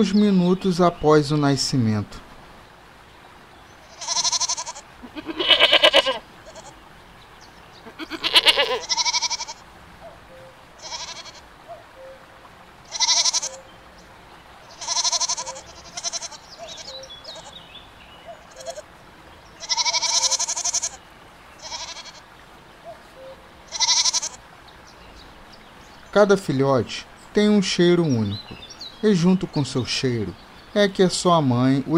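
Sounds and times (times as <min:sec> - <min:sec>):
goats bleating: 0:03.8 - 0:06.8, 0:07.8 - 0:09.6, 0:10.8 - 0:11.5, 0:12.9 - 0:13.7, 0:14.7 - 0:17.6, 0:18.4 - 0:18.9, 0:19.6 - 0:21.0, 0:21.6 - 0:22.3, 0:23.7 - 0:24.4.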